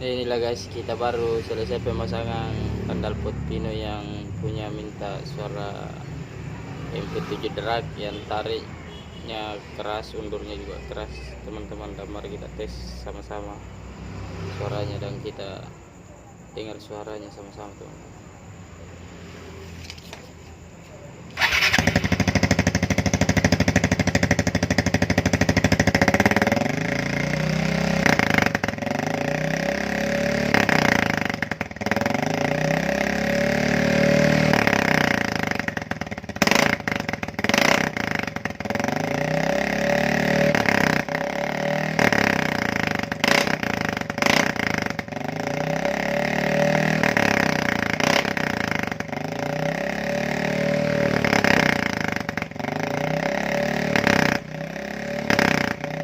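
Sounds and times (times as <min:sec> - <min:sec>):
scooter engine revving: 0:00.0 - 0:08.7, 0:21.3 - 0:56.0.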